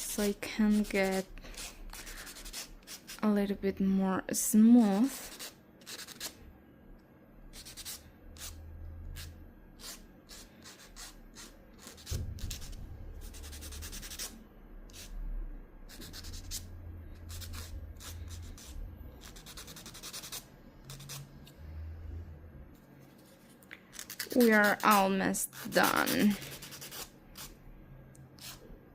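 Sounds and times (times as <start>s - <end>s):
nail file rubbing: 0.2s - 3.2s, 5.1s - 6.4s, 7.5s - 14.3s, 14.9s - 15.1s, 15.9s - 21.3s, 23.9s - 27.6s, 28.4s - 28.6s.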